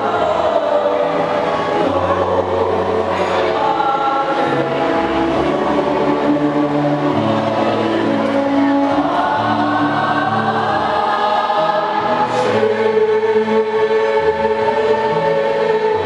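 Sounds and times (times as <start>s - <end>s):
choir singing in harmony: 0.0s - 16.0s.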